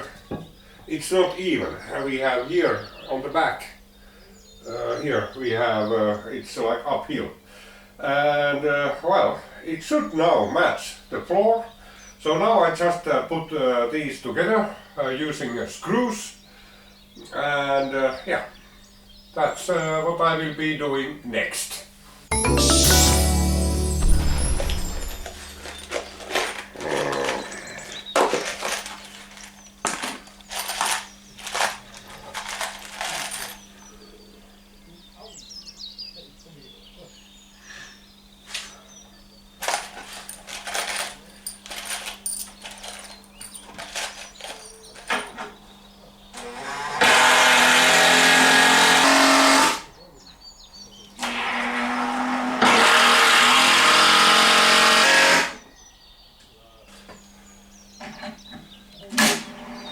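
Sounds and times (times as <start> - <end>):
power drill driving screws: 51.2 - 55.6.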